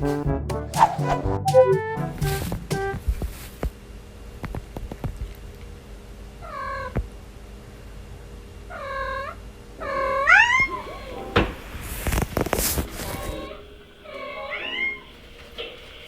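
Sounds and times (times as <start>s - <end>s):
cat meowing: 9.8s - 10.8s, 14.1s - 15.1s.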